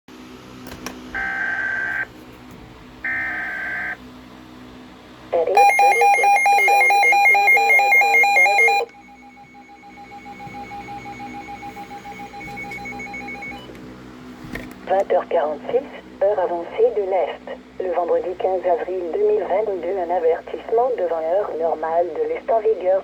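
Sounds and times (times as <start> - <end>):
pulsing electronic alarm: 1.2 - 2.1, 3.0 - 4.0, 5.6 - 13.7
steady alert tone: 5.5 - 13.6.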